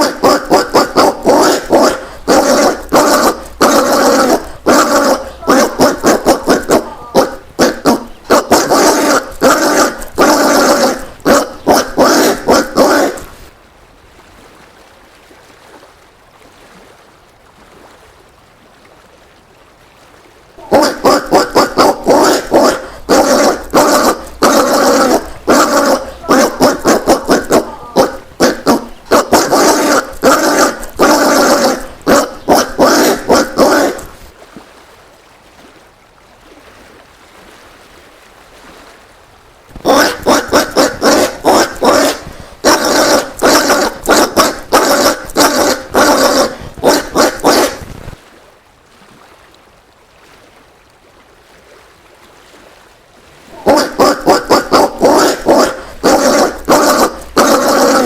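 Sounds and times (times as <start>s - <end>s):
peccary calling: 0.0s - 13.5s, 20.6s - 34.3s, 39.7s - 47.9s, 53.5s - 58.0s.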